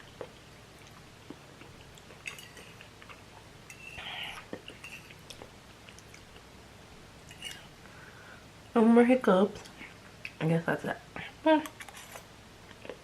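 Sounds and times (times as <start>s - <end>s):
soft chewing: 0.0s - 6.5s, 11.6s - 13.0s.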